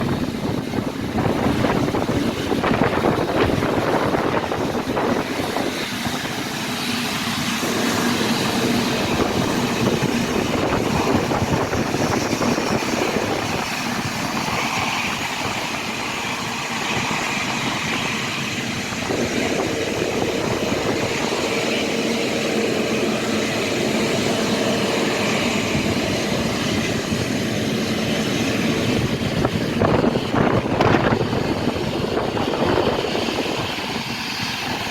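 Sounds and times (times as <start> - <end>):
faint engine whine: 0.0 - 34.9
jet engines rushing: 0.0 - 34.9.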